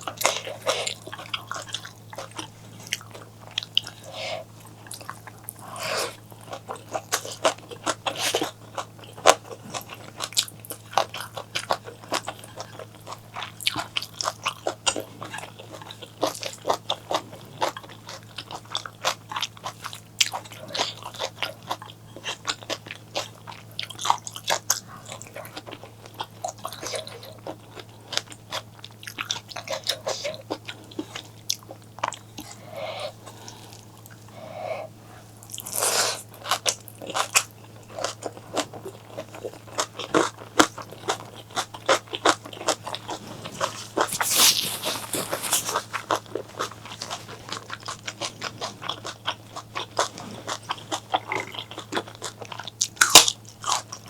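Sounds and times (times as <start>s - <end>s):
crunchy chewing: 0.0s - 54.0s
faint low hum: 0.0s - 54.0s
wet mouth clicks: 43.6s - 46.0s.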